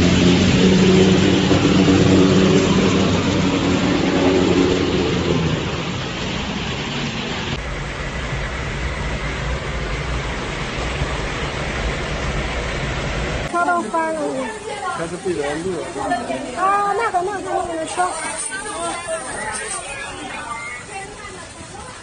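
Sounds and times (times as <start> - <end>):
vehicle engine running: 0.0 - 13.7
low rumble and hiss: 0.0 - 17.9
steady rushing noise: 0.0 - 22.0.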